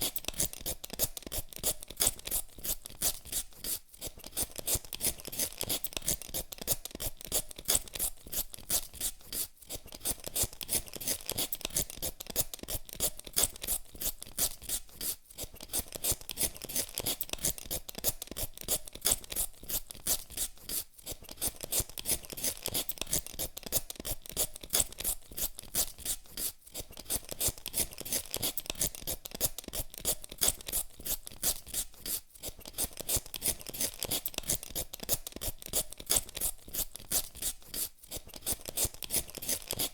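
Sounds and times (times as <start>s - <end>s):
peeler scraping potato: 0.0s - 39.9s.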